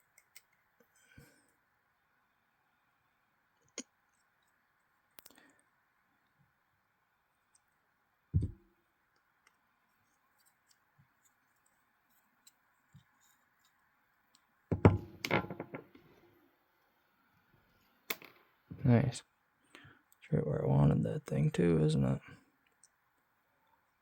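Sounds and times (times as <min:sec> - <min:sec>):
knock of metal knife parts: 0:14.7 - 0:16.0.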